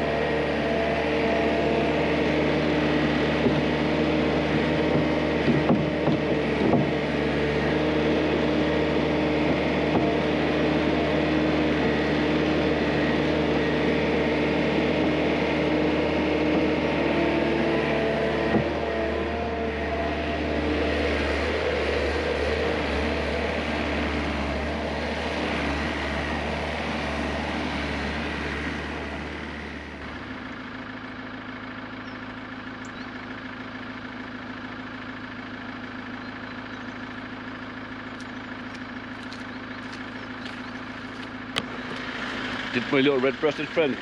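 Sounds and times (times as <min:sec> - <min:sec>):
machine engine running: 0:00.0 - 0:44.0.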